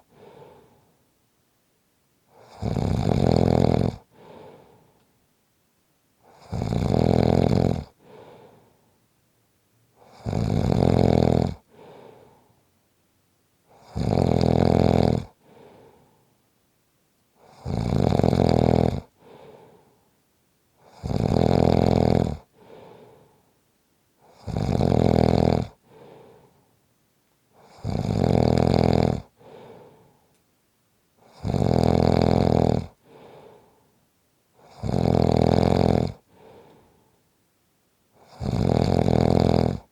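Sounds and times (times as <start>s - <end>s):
person snoring loudly: 2.4s - 4.3s, 6.3s - 8.2s, 10.0s - 11.9s, 13.7s - 15.4s, 17.4s - 19.4s, 20.8s - 22.8s, 24.2s - 25.9s, 27.6s - 29.8s, 31.2s - 33.4s, 34.6s - 36.6s, 38.2s - 39.9s.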